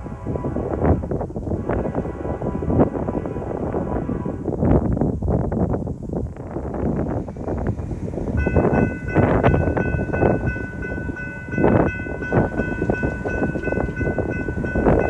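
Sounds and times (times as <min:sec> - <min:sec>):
locomotive air horn: 0:00.0 - 0:05.0
train rumbling: 0:00.0 - 0:15.0
wind on microphone: 0:00.0 - 0:15.0.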